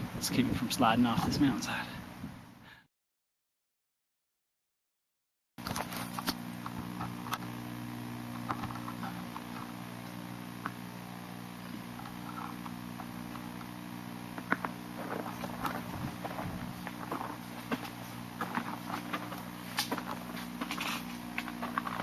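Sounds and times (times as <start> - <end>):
footsteps crunching on icy snow: 14.4 - 22.0.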